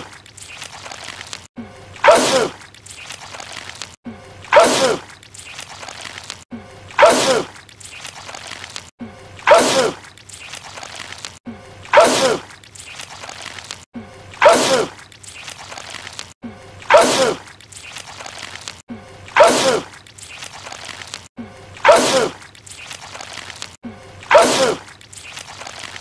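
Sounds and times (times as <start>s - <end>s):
wet gooey sound: 0.0s - 26.0s
cartoon sneeze: 2.0s - 2.6s, 4.5s - 5.1s, 7.0s - 7.5s, 9.4s - 10.0s, 11.9s - 12.5s, 14.4s - 15.0s, 16.9s - 17.5s, 19.3s - 20.0s, 21.8s - 22.4s, 24.3s - 24.9s.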